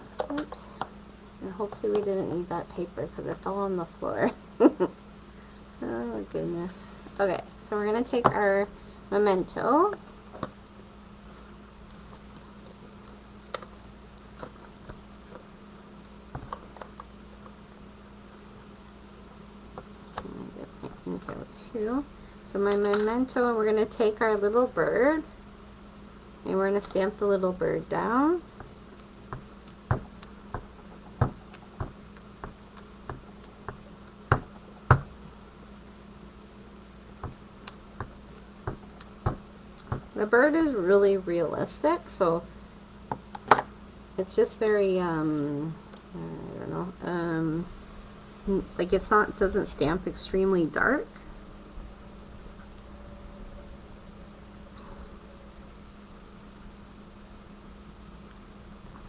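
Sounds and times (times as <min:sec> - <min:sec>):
faint steady hum: 0:00.0 - 0:59.0.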